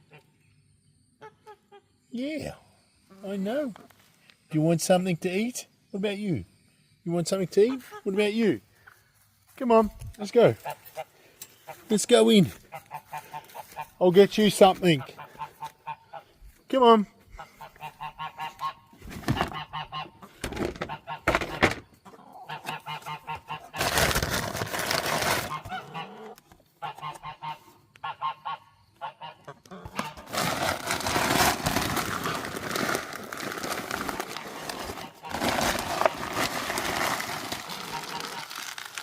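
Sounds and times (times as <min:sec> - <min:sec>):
geese honking: 0:12.7 - 0:14.1, 0:17.4 - 0:21.3, 0:22.0 - 0:23.8, 0:25.5 - 0:30.4
rustling: 0:23.6 - 0:25.9, 0:30.0 - 0:39.0.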